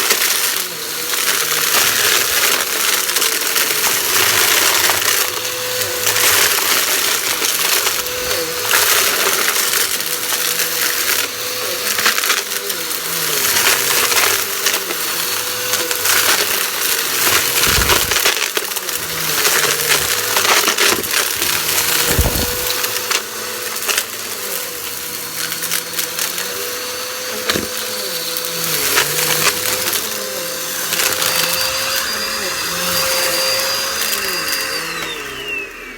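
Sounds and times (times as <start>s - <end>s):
vacuum cleaner motor whine: 0.0s - 35.9s
debris crackling and rattling: 15.6s - 26.4s.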